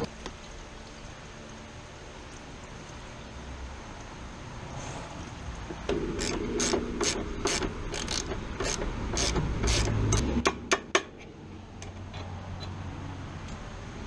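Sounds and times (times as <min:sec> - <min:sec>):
ratchet wrench clicking: 0:06.2 - 0:10.6.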